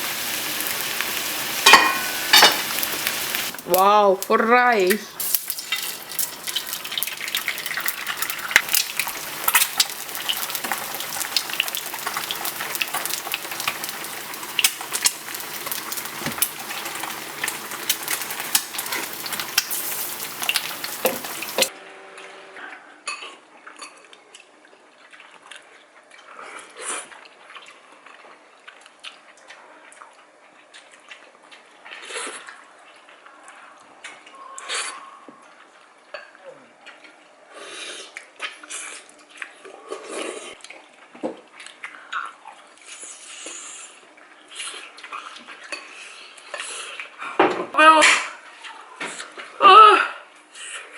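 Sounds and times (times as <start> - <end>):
food sizzling in a pan: 0.0 - 21.7
utensils clinking on dishes: 1.6 - 3.0, 4.9 - 13.1.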